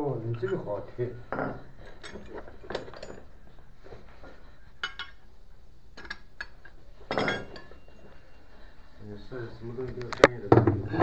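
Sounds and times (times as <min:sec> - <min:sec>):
metal clinks: 0:01.8 - 0:03.4, 0:06.0 - 0:08.2.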